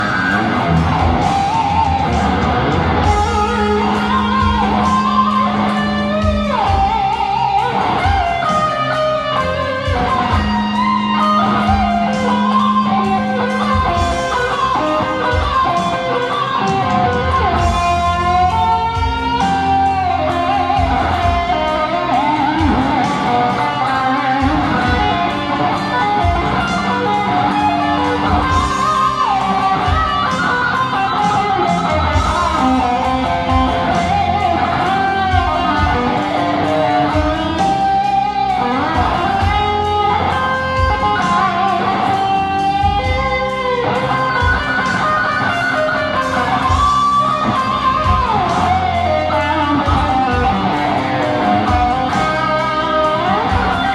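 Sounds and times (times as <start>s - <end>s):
backing track with drums and bass: 0.0s - 53.9s
electric guitar solo: 0.0s - 53.9s.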